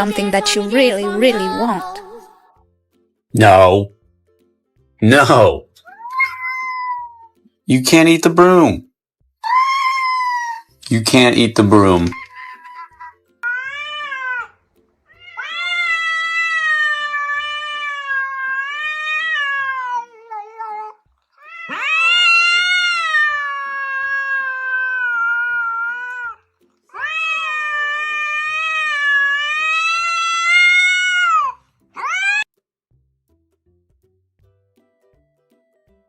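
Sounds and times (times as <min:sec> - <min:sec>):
cat yowling: 0:05.8 - 0:07.4, 0:09.4 - 0:10.8, 0:12.2 - 0:32.5.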